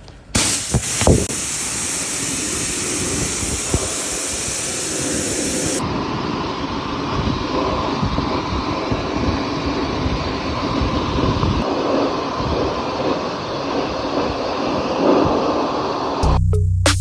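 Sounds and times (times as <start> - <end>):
rushing hissing noise: 0.3 - 16.2.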